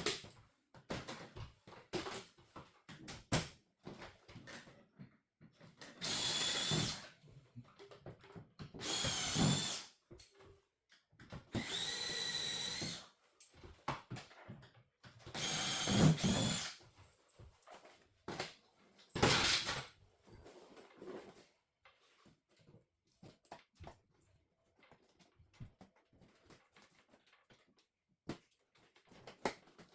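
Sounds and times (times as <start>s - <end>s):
power drill whining: 6.0s - 7.1s, 8.8s - 9.9s, 11.5s - 13.0s, 15.4s - 16.8s.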